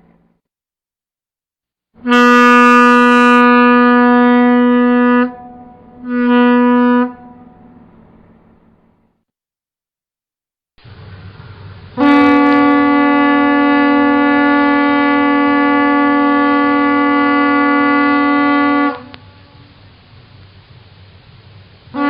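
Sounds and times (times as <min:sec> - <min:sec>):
boat air horn blast: 0:02.0 - 0:08.0, 0:12.0 - 0:19.7.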